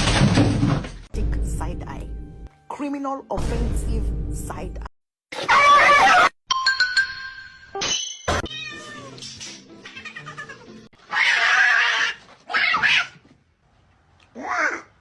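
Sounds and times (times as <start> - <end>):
music: 1.2 - 4.9, 8.4 - 10.9
cat meowing: 8.5 - 9.2.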